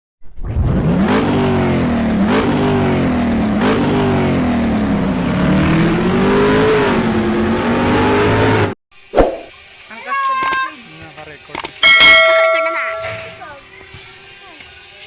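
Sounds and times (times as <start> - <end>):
car engine accelerating: 0.4 - 8.8.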